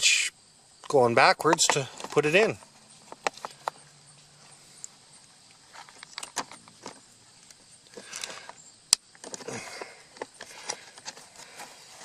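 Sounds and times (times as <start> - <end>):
plastic clicks: 5.8 - 11.2.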